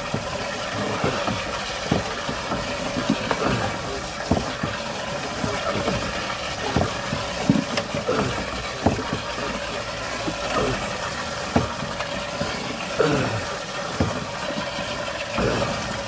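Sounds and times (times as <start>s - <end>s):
knocks and clunks: 0.0s - 16.0s
water gurgling in drain pipe: 0.0s - 16.0s.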